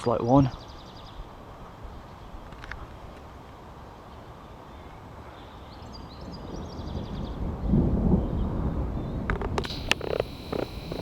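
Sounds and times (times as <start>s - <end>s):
small bird chirping: 9.6s - 11.0s.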